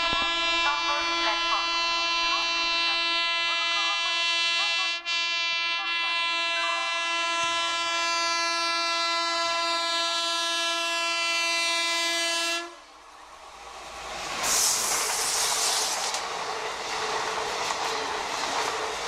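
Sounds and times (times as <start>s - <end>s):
electric locomotive horn blast: 0.0s - 12.8s.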